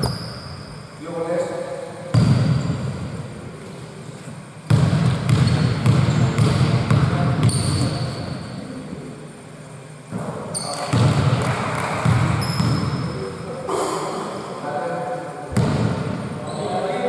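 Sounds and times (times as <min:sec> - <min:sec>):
sneaker squeaks on floor: 0:00.0 - 0:01.0, 0:02.1 - 0:03.0, 0:05.2 - 0:06.5, 0:07.3 - 0:08.6, 0:10.4 - 0:11.1, 0:12.3 - 0:13.2, 0:16.4 - 0:17.0
basketball bouncing: 0:02.1 - 0:02.9, 0:04.7 - 0:08.2, 0:10.9 - 0:13.0, 0:15.5 - 0:16.0.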